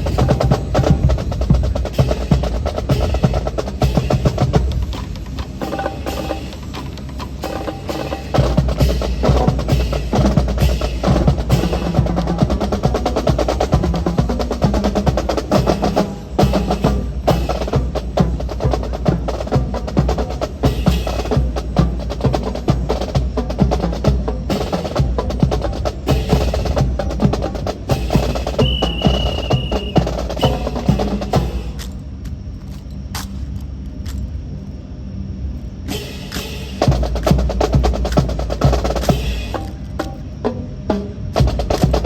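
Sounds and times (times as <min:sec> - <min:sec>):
music with steady beat: 0:00.0 - 0:31.8.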